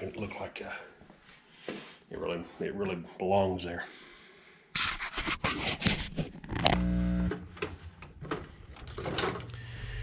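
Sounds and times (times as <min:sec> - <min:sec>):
clicks: 0:06.5 - 0:09.6
brief steady buzz: 0:06.8 - 0:07.3.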